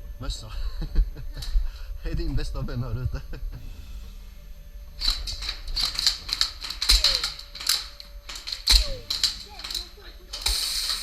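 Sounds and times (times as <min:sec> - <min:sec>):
heavy knocks: 0:05.0 - 0:10.0
airsoft guns firing: 0:05.0 - 0:11.0.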